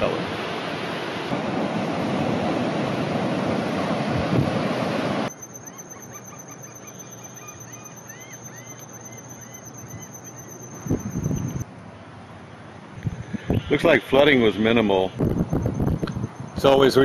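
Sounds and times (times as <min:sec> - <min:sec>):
ocean waves breaking: 0:00.0 - 0:05.3
high insect drone: 0:05.3 - 0:11.6.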